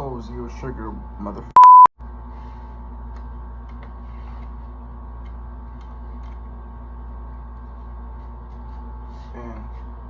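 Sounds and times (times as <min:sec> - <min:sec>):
low electrical hum: 0:00.0 - 0:10.0.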